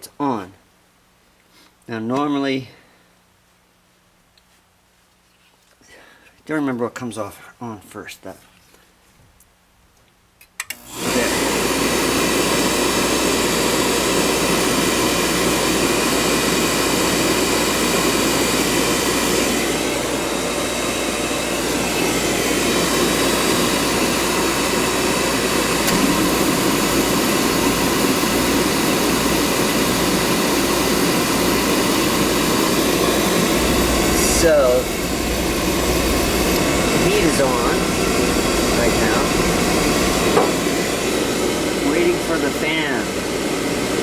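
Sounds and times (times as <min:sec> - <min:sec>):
furnace burner roaring: 0:10.8 - 0:44.0
furnace igniter clicks: 0:25.8 - 0:27.3.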